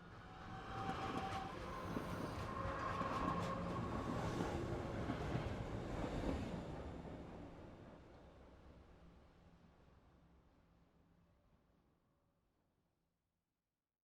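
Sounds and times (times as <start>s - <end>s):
train rumbling on rails: 0.1s - 8.0s.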